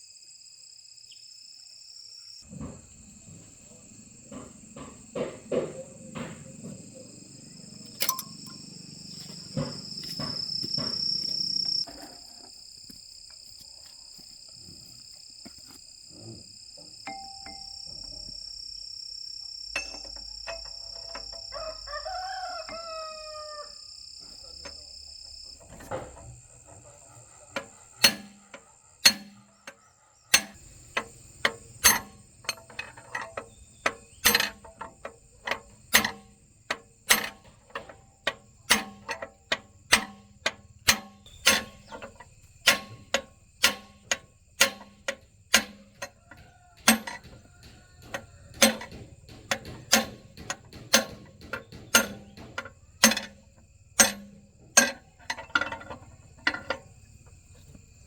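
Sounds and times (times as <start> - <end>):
hammer blows on metal: 27.6 - 29.7.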